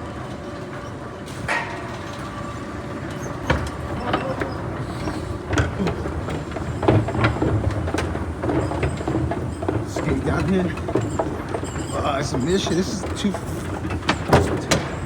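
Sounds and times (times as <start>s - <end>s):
irregular knocks and clicks: 3.1s - 15.0s.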